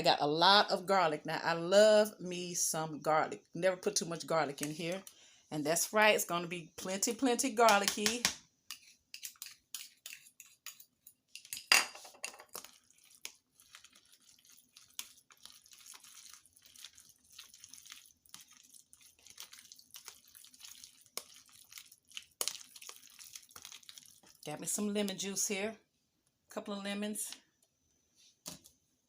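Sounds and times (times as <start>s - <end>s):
spoon clinking and scraping in bowl: 8.7s - 21.8s.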